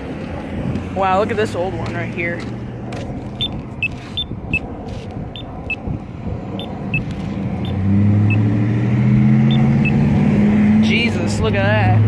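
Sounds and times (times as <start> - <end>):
road traffic: 0.0 - 12.0
vehicle engine humming: 0.0 - 12.0
crosswalk locator beeps: 3.4 - 4.6, 5.4 - 5.9, 6.6 - 8.5, 9.4 - 10.1.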